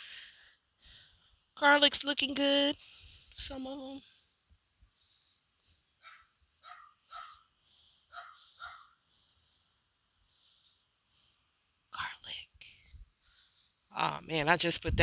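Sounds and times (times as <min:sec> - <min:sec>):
short animal calls: 0:06.0 - 0:07.4.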